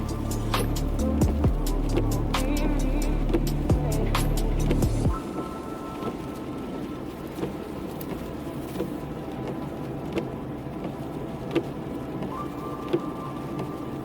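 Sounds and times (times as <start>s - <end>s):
car engine running: 0.0s - 5.2s.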